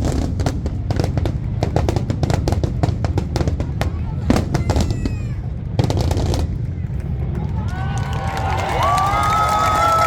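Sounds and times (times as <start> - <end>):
fireworks bangs and crackles: 0.0 - 10.0
fireworks whistles falling in pitch: 4.5 - 5.4.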